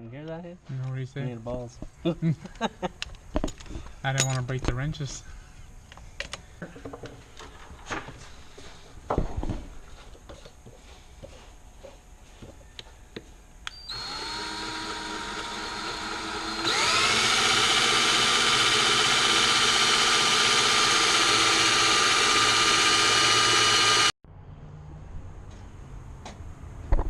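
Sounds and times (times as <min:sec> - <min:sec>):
electric drill whine: 0:13.7 - 0:24.2.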